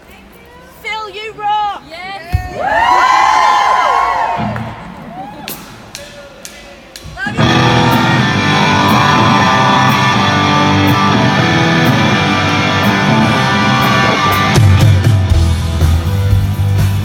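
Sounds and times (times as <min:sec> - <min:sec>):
electric guitar: 0:07.3 - 0:17.0
rock band playing loud: 0:07.3 - 0:17.0.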